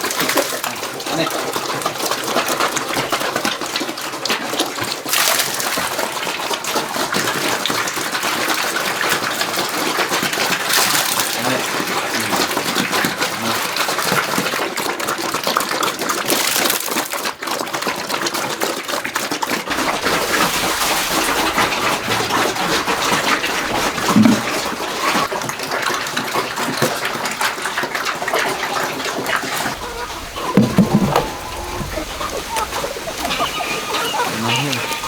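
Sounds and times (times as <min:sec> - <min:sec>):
water splashing: 0:00.0 - 0:35.0.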